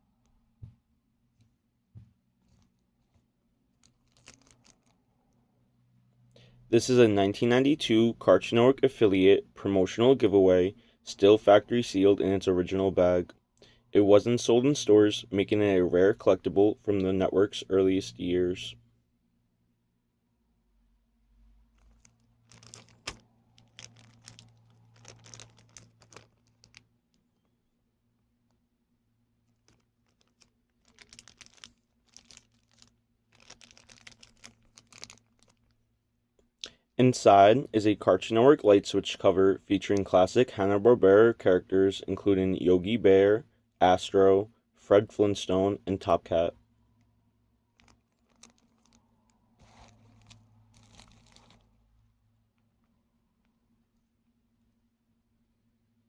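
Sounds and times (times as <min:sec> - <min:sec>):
plastic bag crinkling: 0:03.7 - 0:05.1, 0:21.7 - 0:27.3, 0:29.4 - 0:35.8, 0:47.7 - 0:52.0.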